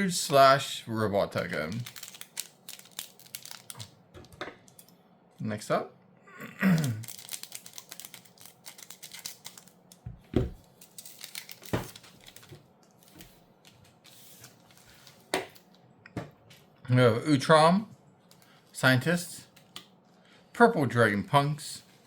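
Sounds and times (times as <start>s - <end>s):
foil wrapper crinkling: 1.4s - 4.0s, 6.8s - 10.0s, 10.6s - 15.7s.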